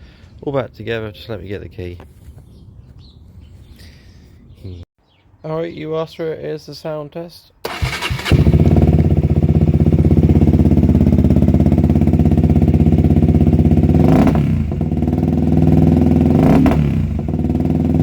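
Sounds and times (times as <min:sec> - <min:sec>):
motorcycle engine idling and revving: 0:07.7 - 0:18.0.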